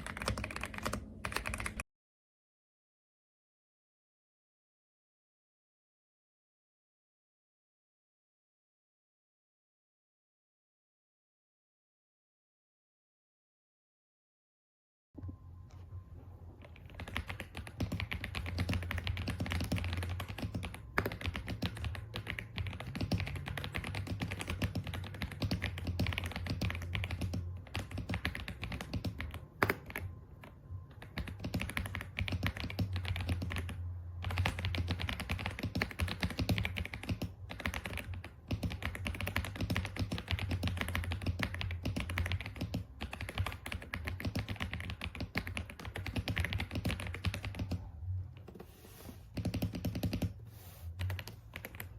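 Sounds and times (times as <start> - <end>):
mechanical keyboard typing: 0.0 - 1.8, 16.6 - 47.8, 49.3 - 50.4, 51.0 - 51.9.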